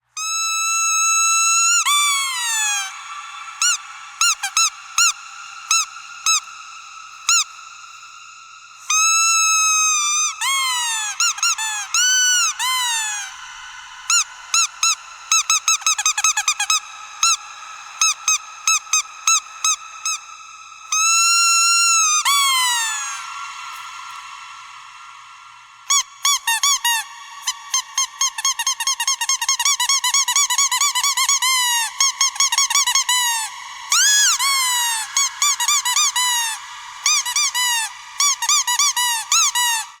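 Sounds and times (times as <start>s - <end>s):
squeaky dog toy squeaking: 0.2s - 2.9s, 3.6s - 5.1s, 8.9s - 13.3s, 14.1s - 17.4s, 20.9s - 23.1s, 25.9s - 27.0s, 27.7s - 39.9s.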